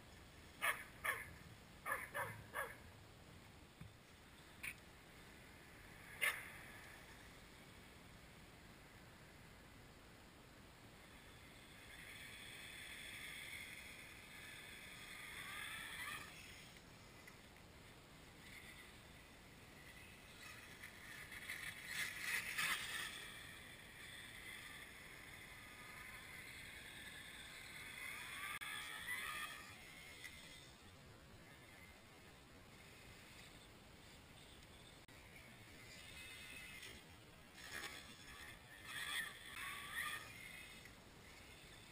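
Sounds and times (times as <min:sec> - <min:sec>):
toy car electric motor whining: 0:11.1 - 0:17.3, 0:18.4 - 0:33.7, 0:34.8 - 0:41.9.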